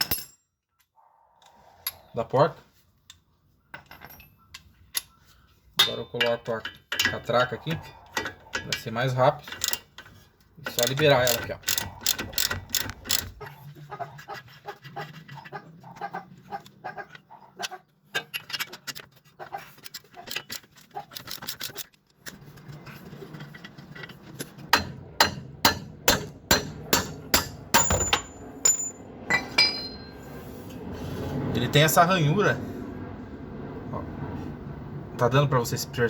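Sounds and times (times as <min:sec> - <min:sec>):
socket ratchet clicking: 0:10.8 - 0:13.3.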